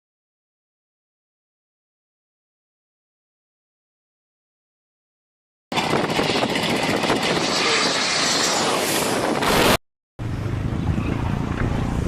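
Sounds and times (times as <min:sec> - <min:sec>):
low rumbling noise: 0:05.7 - 0:12.0
loud rushing noise: 0:05.8 - 0:10.7.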